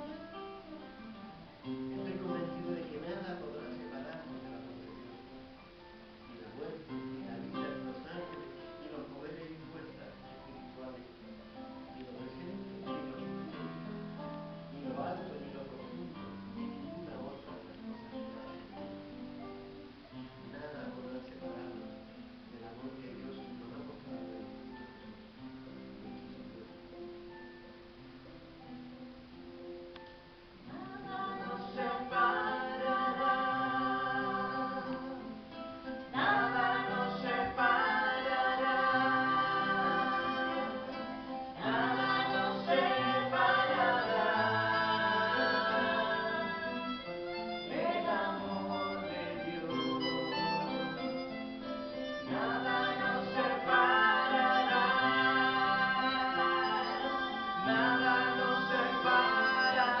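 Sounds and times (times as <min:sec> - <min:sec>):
instrumental music: 0:00.0 - 1:00.0
voices singing long notes: 0:30.6 - 1:00.0.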